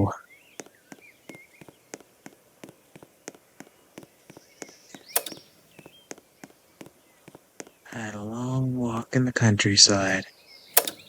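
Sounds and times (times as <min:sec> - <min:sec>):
footsteps in snow: 0:00.0 - 0:09.1
faint bird chirps: 0:00.0 - 0:11.0
sharp click: 0:04.6 - 0:06.2, 0:10.7 - 0:11.0.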